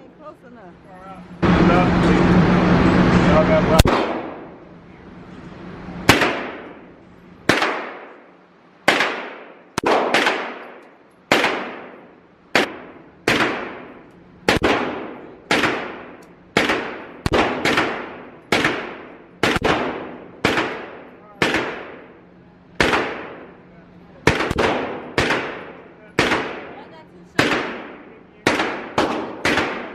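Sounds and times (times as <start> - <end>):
gunshots with ringing echo: 3.8 - 4.6, 6.1 - 6.9, 7.5 - 8.3, 8.9 - 22.2, 22.8 - 23.6, 24.2 - 29.9.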